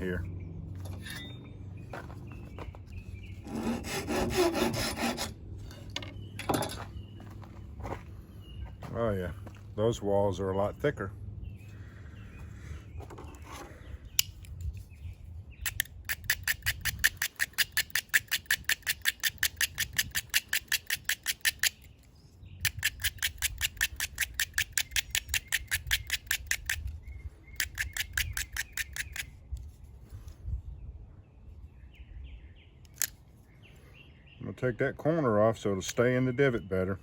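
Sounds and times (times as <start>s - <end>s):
wood rasping: 3.3s - 5.9s.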